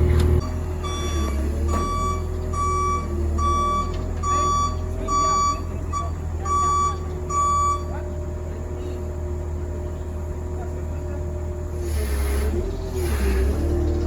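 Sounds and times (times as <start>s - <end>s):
diesel engine drone: 0.0s - 14.0s
backup alarm beeping: 0.8s - 8.0s.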